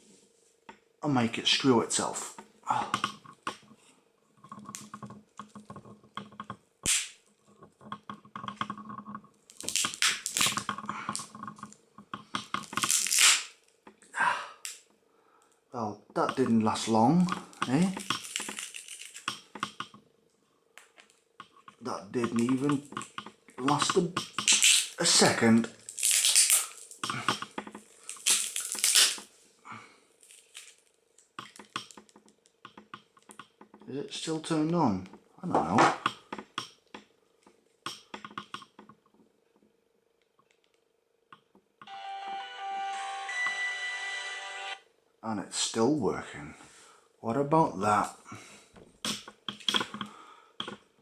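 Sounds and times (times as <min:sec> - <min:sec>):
crunching and scraping: 0:02.2 - 0:14.0, 0:16.2 - 0:20.0, 0:20.8 - 0:29.4, 0:30.1 - 0:33.8
plastic clicks and cracks: 0:04.4 - 0:15.6, 0:17.2 - 0:20.0, 0:20.8 - 0:29.3, 0:30.2 - 0:33.9, 0:35.8 - 0:41.7, 0:48.8 - 0:50.9.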